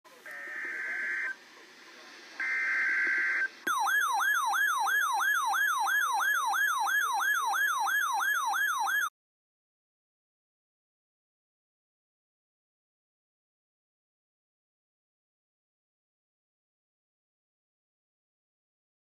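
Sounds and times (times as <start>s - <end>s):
alert tone wailing: 2.4s - 9.1s.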